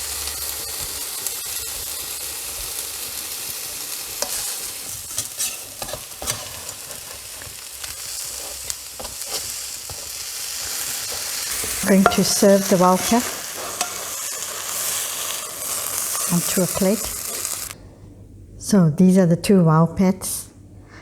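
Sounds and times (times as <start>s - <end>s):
food sizzling in a pan: 0.0s - 17.8s.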